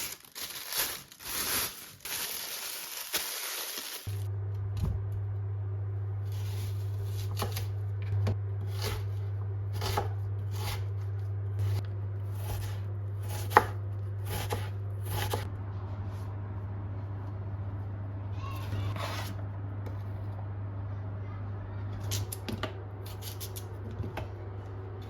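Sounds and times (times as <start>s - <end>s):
steady low hum: 4.1s - 25.0s
knife chopping on cutting board: 9.8s - 10.8s, 12.4s - 15.4s.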